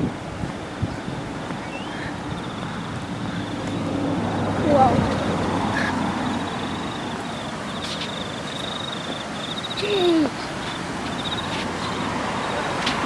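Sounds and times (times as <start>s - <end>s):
floodwater rushing: 0.0s - 13.0s
high pulsing chirp: 3.3s - 12.7s.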